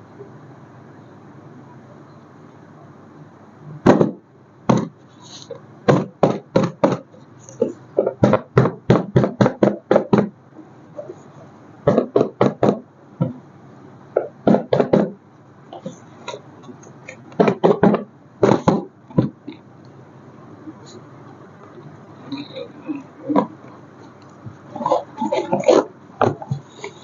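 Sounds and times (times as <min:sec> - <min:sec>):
sharp knocks and taps: 0:05.9 - 0:07.1, 0:11.9 - 0:13.4, 0:14.2 - 0:15.2, 0:17.4 - 0:19.4.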